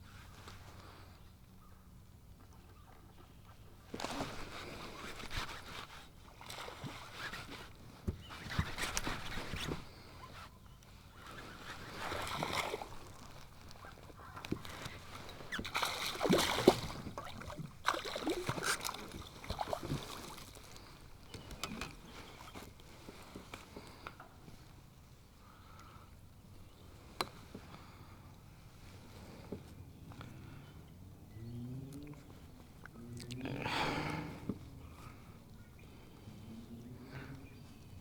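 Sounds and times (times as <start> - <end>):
water splashing around kayak: 11.0 - 24.6.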